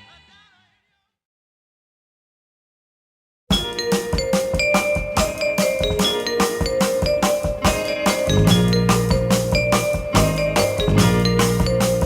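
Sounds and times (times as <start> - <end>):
instrumental music with drum beat: 3.5 - 12.0.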